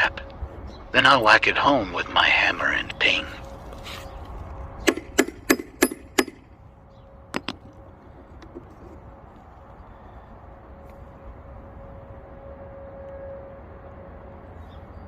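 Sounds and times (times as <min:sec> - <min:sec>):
hammer striking steel bar: 0:04.9 - 0:06.5.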